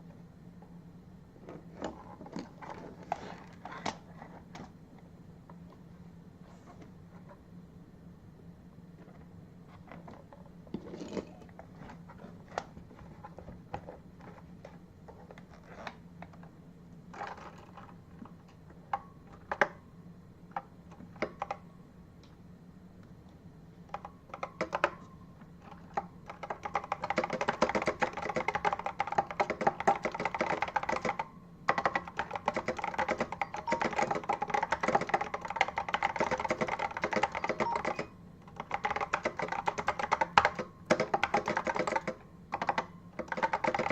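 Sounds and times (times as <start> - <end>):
keyboard typing: 20.9 - 21.6, 23.9 - 43.9.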